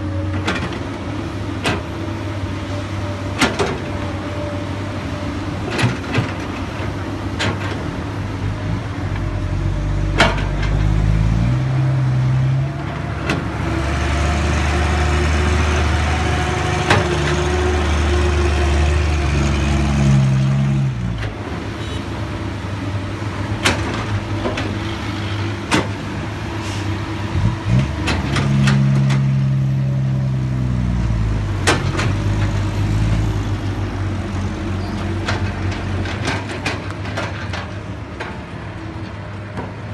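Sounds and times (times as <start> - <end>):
excavator diesel engine working: 0.0 - 39.9.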